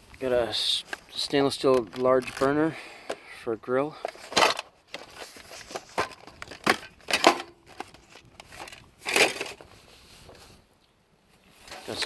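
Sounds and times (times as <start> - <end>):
scrap items clattering and rustling: 0.8 - 3.3, 3.9 - 10.6, 11.5 - 12.0.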